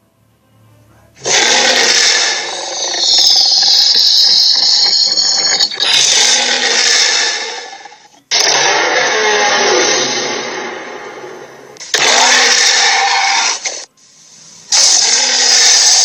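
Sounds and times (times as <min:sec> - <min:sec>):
harsh hissing rasp: 0:11.8 - 0:16.0.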